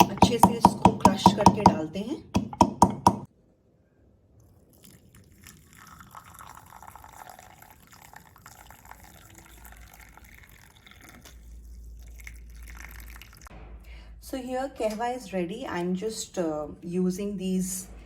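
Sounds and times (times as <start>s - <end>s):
tea pouring into a cup: 4.5s - 13.5s.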